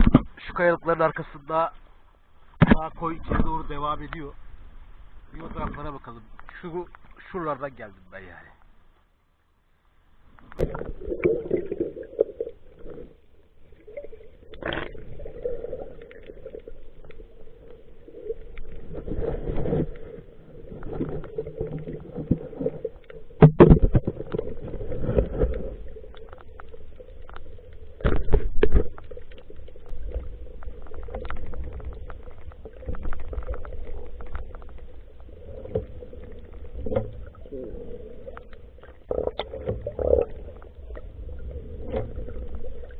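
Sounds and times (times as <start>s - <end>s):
water splashes and knocks: 0.0s - 0.4s, 2.6s - 4.2s, 18.5s - 37.5s, 38.2s - 42.9s
muffled water sloshing and gurgling: 0.0s - 8.9s, 10.1s - 42.9s.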